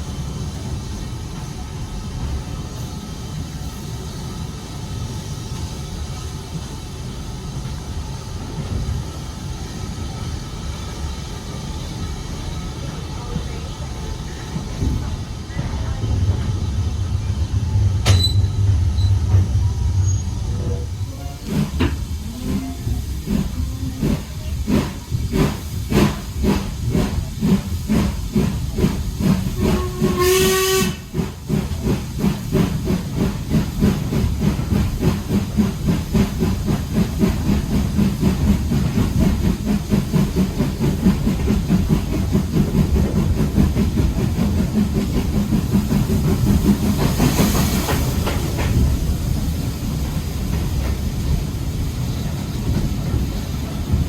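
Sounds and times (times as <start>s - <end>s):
steam hiss: 0.0s - 54.0s
steam locomotive chuffing: 0.0s - 54.0s
steam locomotive whistle: 29.5s - 31.2s.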